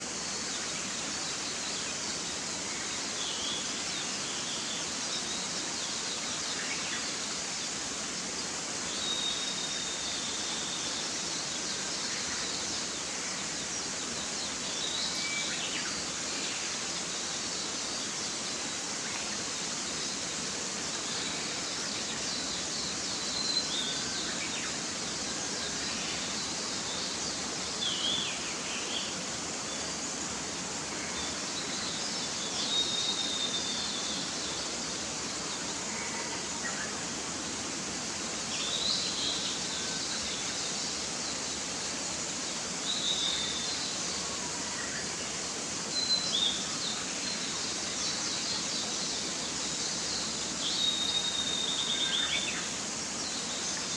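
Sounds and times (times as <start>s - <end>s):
mountain stream rushing: 0.0s - 53.9s
songbirds chirping: 0.0s - 53.9s.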